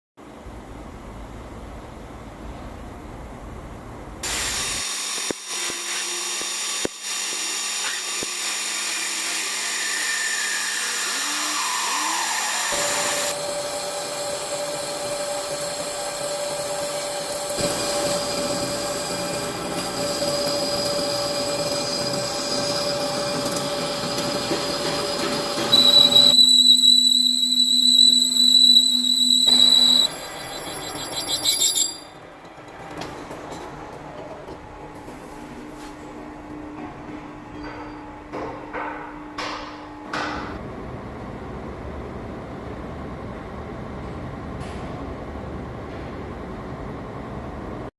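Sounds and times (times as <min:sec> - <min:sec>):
metal lathe whine: 0:06.2 - 0:32.6.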